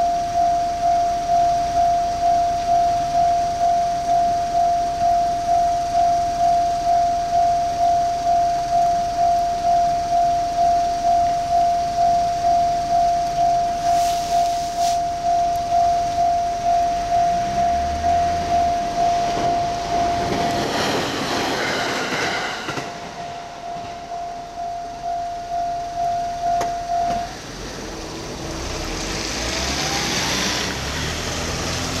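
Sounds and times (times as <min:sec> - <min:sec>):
level-crossing warning bell: 0:00.0 - 0:31.0
train running past: 0:13.4 - 0:32.0.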